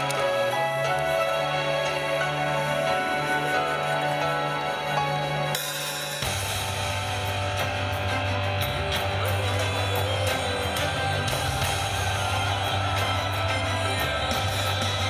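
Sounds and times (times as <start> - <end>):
band playing a song: 0.0 - 15.0.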